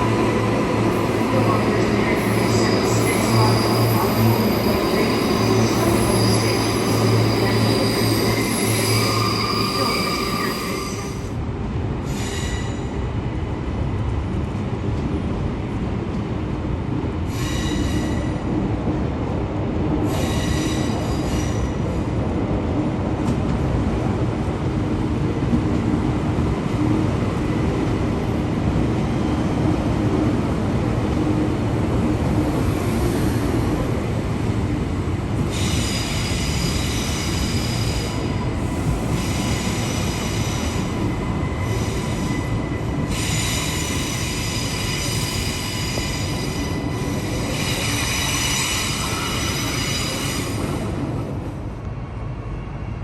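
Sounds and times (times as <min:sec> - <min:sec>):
electric train rumbling: 0:00.0 - 0:53.0
train wheels squealing: 0:02.2 - 0:11.3, 0:17.3 - 0:18.4, 0:20.0 - 0:21.8, 0:35.4 - 0:51.0.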